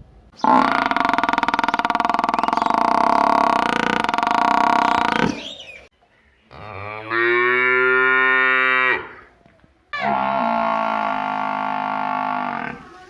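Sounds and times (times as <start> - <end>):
cattle mooing: 6.5 - 9.3, 10.0 - 13.0.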